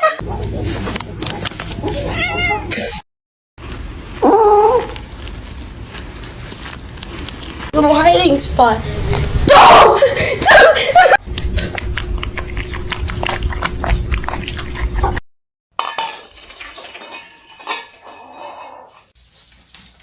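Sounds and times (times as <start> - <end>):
hard objects clinking: 15.8 - 18.8.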